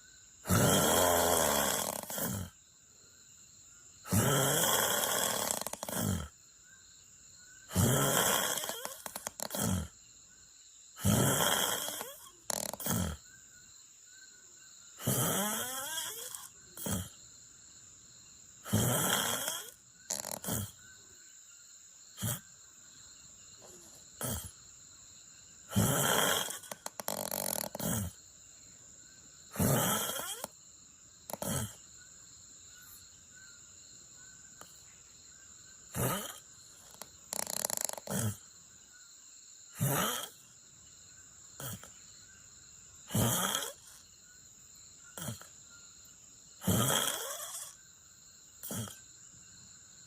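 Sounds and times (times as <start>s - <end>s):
person snoring: 0.5s - 2.5s, 4.1s - 6.3s, 7.7s - 9.9s, 11.0s - 13.2s, 15.0s - 17.1s, 18.7s - 20.8s, 22.2s - 22.4s, 23.6s - 24.5s, 25.7s - 28.2s, 29.5s - 30.5s, 31.3s - 31.8s, 36.0s - 38.4s, 39.8s - 40.4s, 43.1s - 44.0s, 46.6s - 47.8s, 48.6s - 49.0s.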